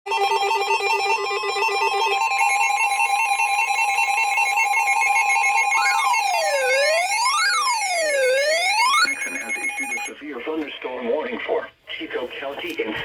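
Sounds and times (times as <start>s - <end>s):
warbling alert trill: 0.1s - 10.1s
siren-like sweeping tone: 0.5s - 10.1s.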